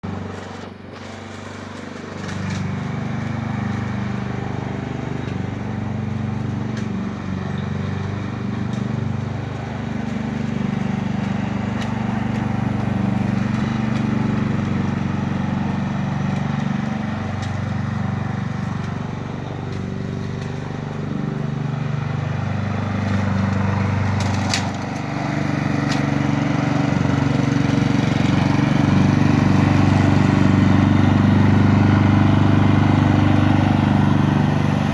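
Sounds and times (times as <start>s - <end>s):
lawn mower engine running: 0.0s - 34.9s.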